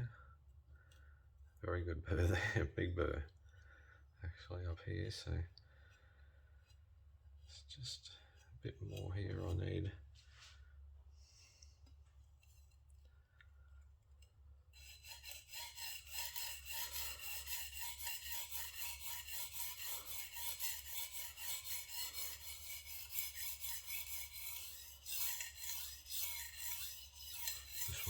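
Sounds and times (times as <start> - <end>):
knife scraping on whetstone: 11.8 - 13.1, 14.2 - 28.0.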